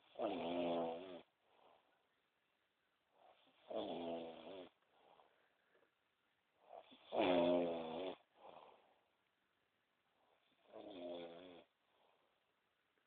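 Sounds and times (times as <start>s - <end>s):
person snoring: 0.1s - 1.3s, 3.3s - 4.8s, 6.7s - 8.8s, 10.6s - 11.7s
soft breath: 1.3s - 2.3s, 4.8s - 7.0s, 8.2s - 9.4s, 11.6s - 12.8s.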